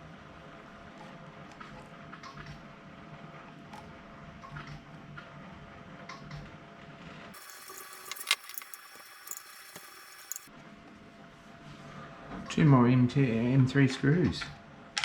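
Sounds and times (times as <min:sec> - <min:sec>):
plastic parts clicking: 0:07.4 - 0:10.5.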